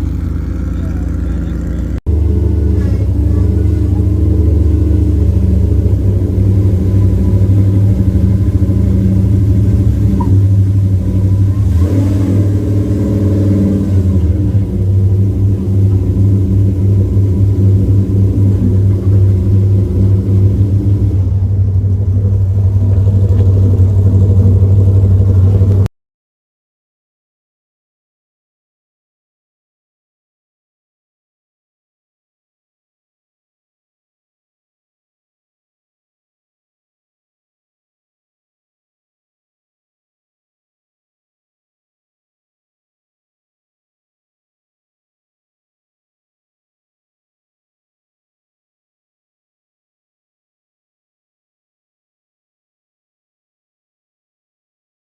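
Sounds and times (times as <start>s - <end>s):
off-road vehicle engine running: 0.0s - 25.9s.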